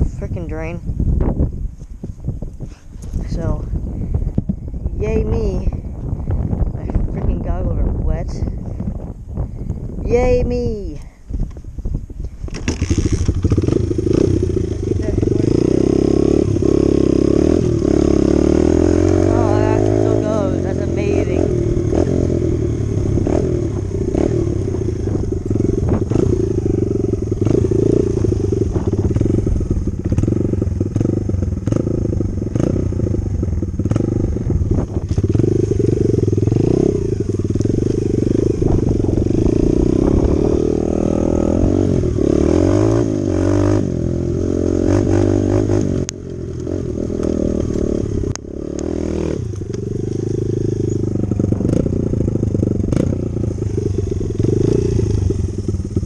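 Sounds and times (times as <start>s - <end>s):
dirt bike engine revving: 12.5s - 56.0s.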